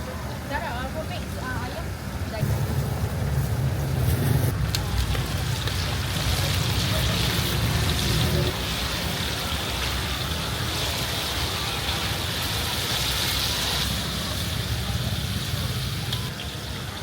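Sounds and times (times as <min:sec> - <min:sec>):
low rumble: 0:02.4 - 0:08.6.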